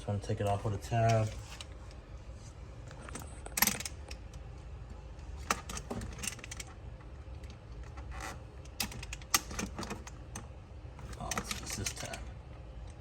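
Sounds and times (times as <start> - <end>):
plastic parts clicking and rattling: 5.4 - 6.8, 7.4 - 10.4, 11.0 - 13.0.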